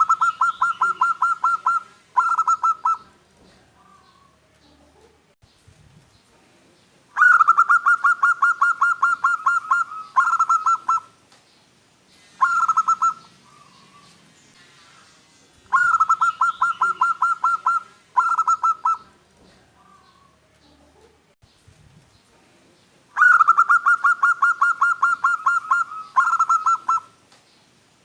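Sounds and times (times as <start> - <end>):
dove cooing song: 0.0 - 5.2, 7.1 - 11.2, 12.2 - 14.2, 15.7 - 21.2, 23.1 - 27.2.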